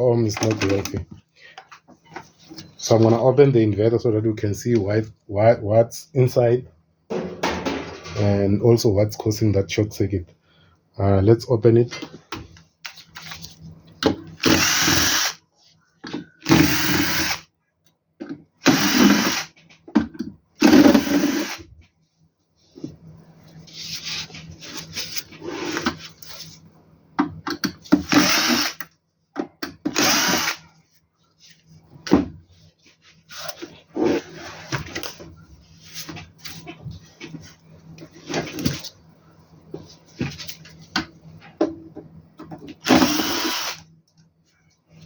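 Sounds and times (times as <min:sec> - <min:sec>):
cordless drill whirring: 0:14.4 - 0:15.4, 0:16.5 - 0:17.4, 0:18.6 - 0:19.5, 0:20.6 - 0:21.6, 0:28.0 - 0:28.8, 0:29.9 - 0:30.6, 0:42.8 - 0:43.8.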